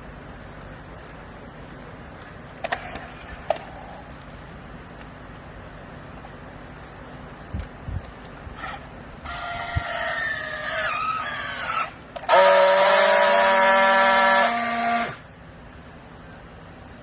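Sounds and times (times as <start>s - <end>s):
hydraulic baler whining: 8.6s - 15.3s.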